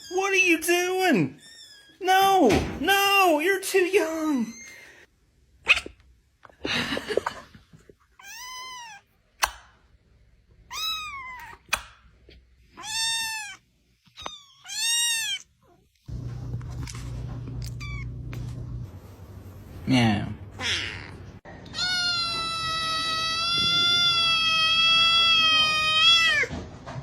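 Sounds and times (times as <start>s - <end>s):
cat meowing: 8.2s - 9.1s, 10.7s - 11.8s, 12.7s - 15.8s, 17.7s - 18.2s, 20.6s - 26.5s
steady low hum: 16.1s - 20.6s.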